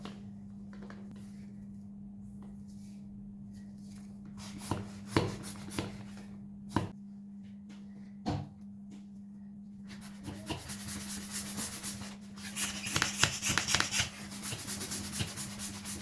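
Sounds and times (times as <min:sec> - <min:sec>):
steady low hum: 0:00.0 - 0:16.0
sharp taps on a balloon: 0:12.9 - 0:14.0.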